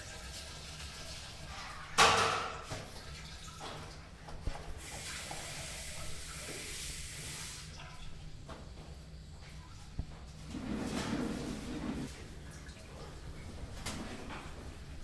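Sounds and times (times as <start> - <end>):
sink faucet running: 4.8 - 7.7.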